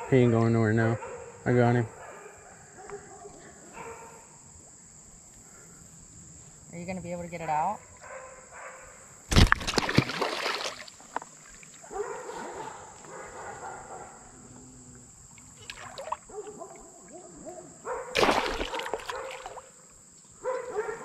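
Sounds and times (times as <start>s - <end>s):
high insect drone: 0.0s - 21.0s
fish splashing in water: 9.3s - 11.7s, 15.5s - 16.8s, 18.1s - 19.7s.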